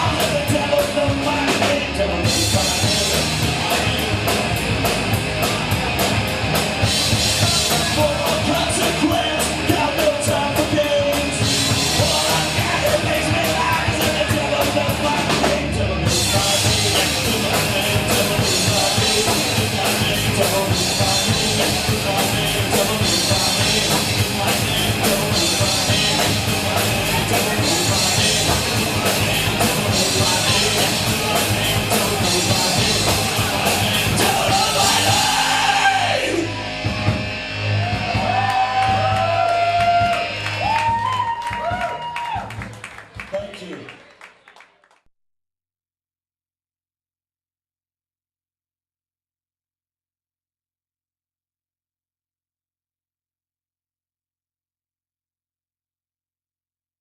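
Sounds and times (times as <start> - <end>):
loud rock band music: 0.0 - 43.3.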